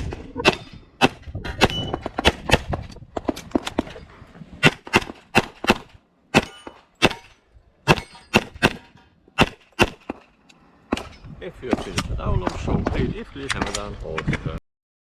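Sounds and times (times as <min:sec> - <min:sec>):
rapid pistol shots: 0:04.6 - 0:10.3.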